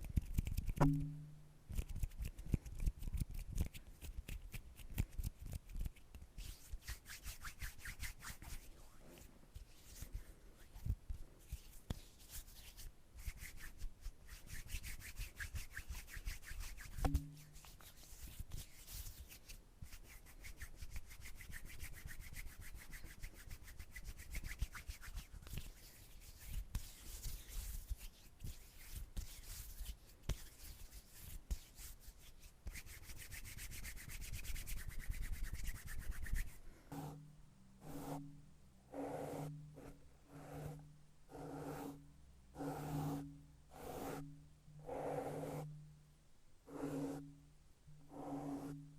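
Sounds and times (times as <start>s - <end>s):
hands rubbing together: 1.7s - 37.2s.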